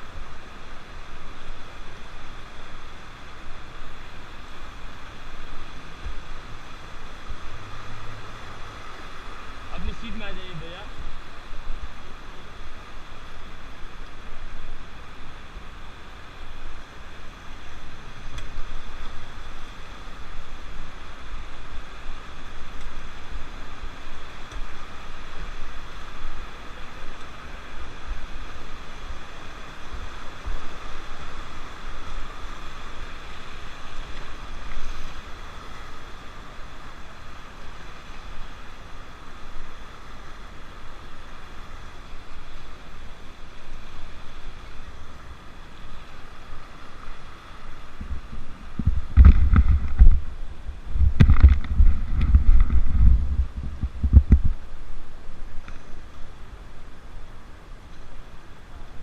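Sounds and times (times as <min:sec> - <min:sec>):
rushing river water: 0:00.0 - 0:59.0
wind buffeting microphone: 0:47.9 - 0:55.3.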